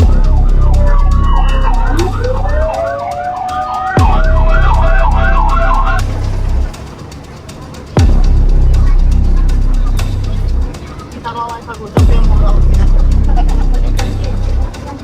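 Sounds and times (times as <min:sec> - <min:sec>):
siren winding up: 0:00.0 - 0:06.1
siren yelping: 0:00.0 - 0:06.3
loud low rumble: 0:00.0 - 0:10.7, 0:12.0 - 0:14.7.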